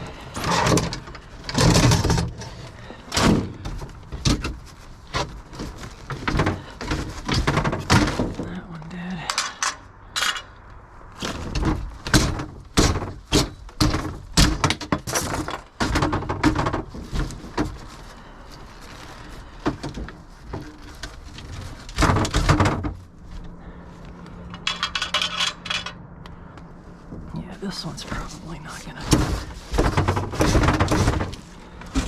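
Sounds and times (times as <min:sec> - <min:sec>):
drawers banging in a metal dumpster: 0:00.0 - 0:10.5, 0:11.2 - 0:17.8, 0:21.4 - 0:23.0, 0:29.0 - 0:32.0.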